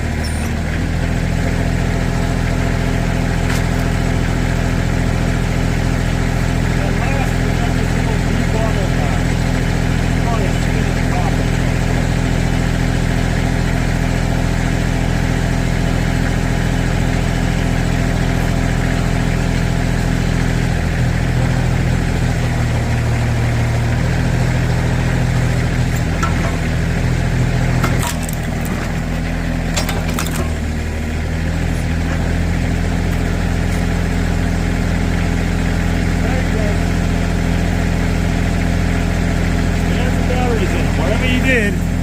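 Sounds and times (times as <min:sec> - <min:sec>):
backhoe engine running under load: 0:00.0 - 0:42.0
plastic breaking with sharp cracks: 0:27.8 - 0:29.1.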